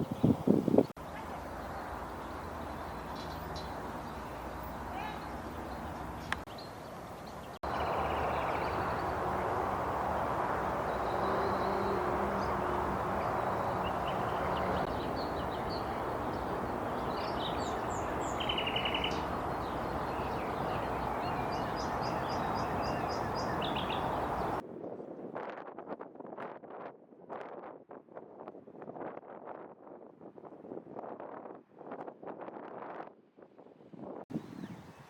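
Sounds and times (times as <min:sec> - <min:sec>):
bird singing: 0:00.0 - 0:24.6, 0:34.3 - 0:35.0.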